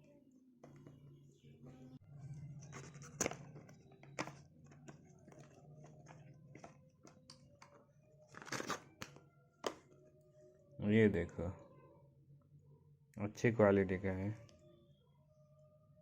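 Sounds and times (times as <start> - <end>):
packaging rustling and tearing: 8.3 - 9.1.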